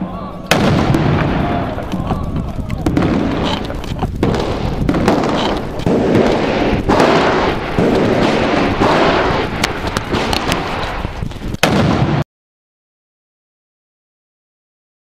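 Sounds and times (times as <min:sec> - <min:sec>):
pyrotechnic blasts: 0:00.0 - 0:12.2
airsoft gunfire: 0:02.8 - 0:12.2.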